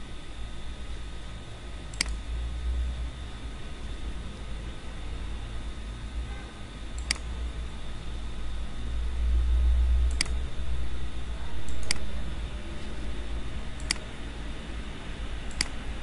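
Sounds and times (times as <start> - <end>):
low hum and hiss: 0.0 - 16.0
computer mouse clicks: 1.9 - 2.2, 7.0 - 7.3, 10.1 - 10.4, 11.7 - 12.1, 13.8 - 14.1, 15.5 - 15.8.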